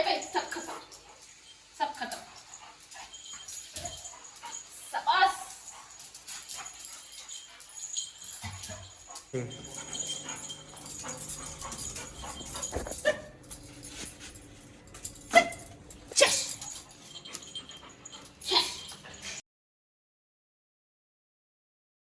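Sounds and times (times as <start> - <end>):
puppy vocal sounds: 8.3 - 14.4.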